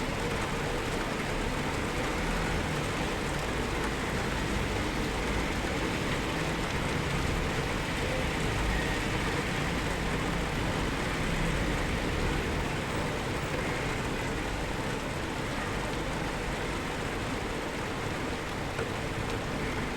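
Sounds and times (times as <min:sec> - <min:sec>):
steady rainfall: 0:00.0 - 0:19.9.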